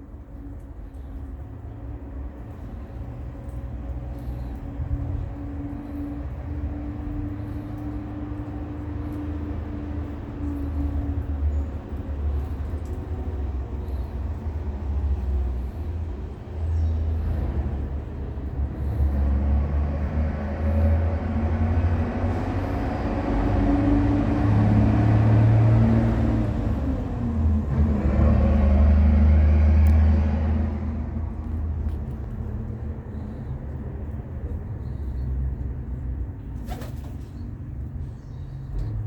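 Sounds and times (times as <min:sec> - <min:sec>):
motor vehicle engine rumble: 0:00.0 - 0:39.0.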